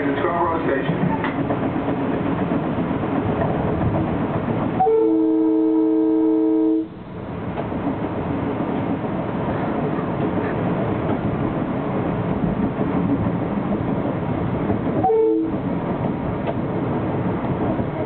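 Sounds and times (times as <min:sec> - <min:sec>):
electric train running on track: 0:00.0 - 0:18.0
train horn blast: 0:04.8 - 0:07.0, 0:15.0 - 0:15.6.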